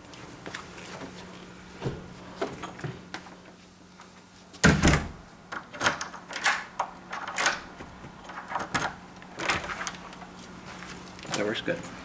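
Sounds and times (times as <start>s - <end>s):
door shutting with thump: 4.6s - 5.2s
deadbolt clicking: 4.7s - 9.8s.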